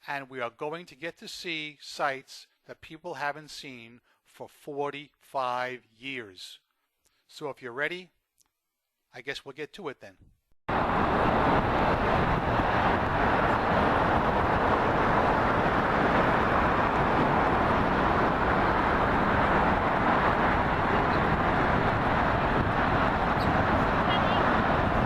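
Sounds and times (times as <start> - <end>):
roar of motor traffic: 10.7 - 25.0.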